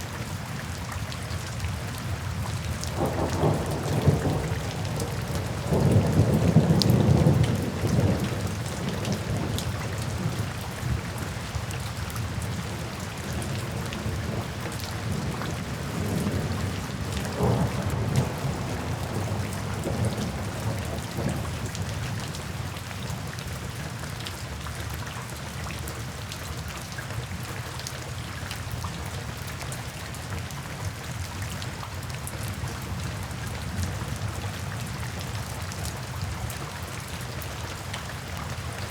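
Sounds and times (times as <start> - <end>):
steady rain: 0.0 - 38.9
thunder rumbling: 2.9 - 11.6, 12.6 - 21.9.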